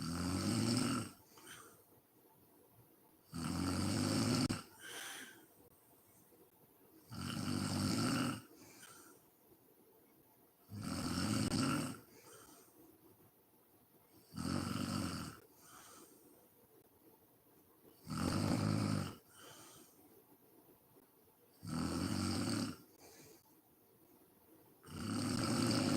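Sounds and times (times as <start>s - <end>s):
woman snoring: 0.0s - 1.7s, 3.3s - 5.4s, 7.1s - 9.1s, 10.7s - 12.5s, 14.2s - 16.1s, 18.0s - 19.9s, 21.6s - 23.4s, 24.8s - 25.9s.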